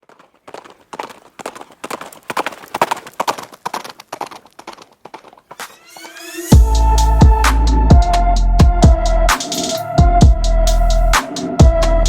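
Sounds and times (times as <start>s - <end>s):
hooves clopping on frozen ground: 0.0s - 6.0s
electronic music with heavy beat: 5.6s - 12.0s
rising tone: 5.6s - 12.0s.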